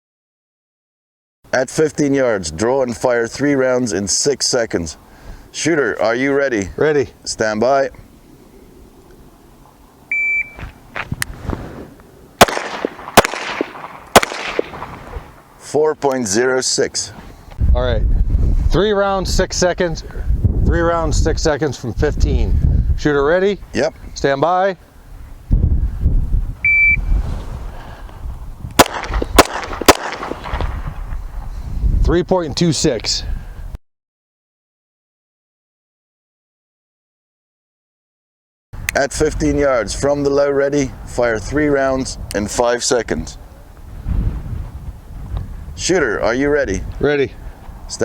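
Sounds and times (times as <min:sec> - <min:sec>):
shot timer beep: 0:10.1 - 0:10.6, 0:26.6 - 0:27.2
pistol gunshot: 0:12.4 - 0:15.2, 0:28.8 - 0:30.8.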